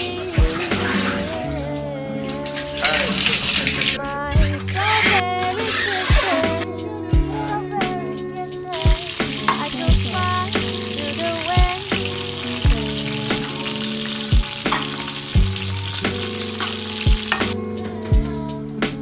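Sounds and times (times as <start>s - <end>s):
background music with drum beat: 0.3s - 1.3s, 7.2s - 19.0s
food sizzling in a pan: 2.5s - 4.0s, 4.7s - 6.6s, 8.7s - 17.6s.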